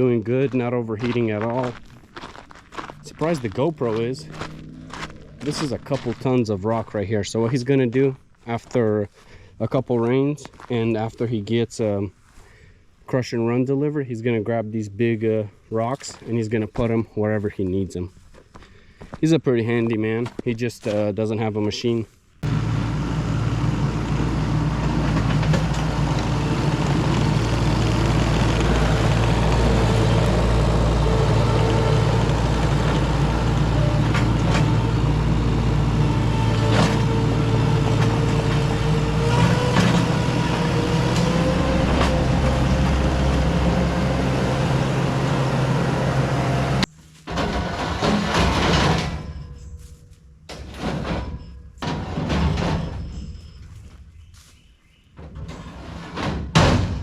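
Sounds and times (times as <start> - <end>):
diesel engine running under load: 0.0 - 7.7, 22.4 - 50.0.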